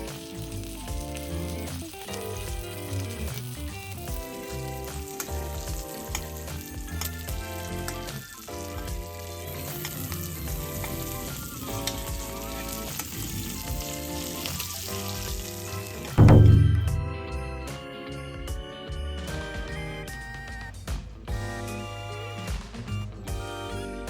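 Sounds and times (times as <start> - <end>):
food sizzling in a pan: 0.0 - 16.2
sharp pops of frying: 0.0 - 17.4
background music: 0.0 - 24.0.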